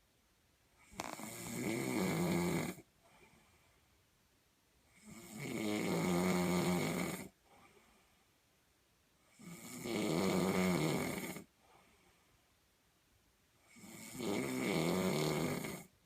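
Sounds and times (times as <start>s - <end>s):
quiet breathing: 0.7s - 4.2s, 6.4s - 9.8s, 10.5s - 12.8s
person snoring: 0.8s - 2.9s, 4.9s - 7.4s, 9.3s - 11.5s, 13.6s - 15.9s.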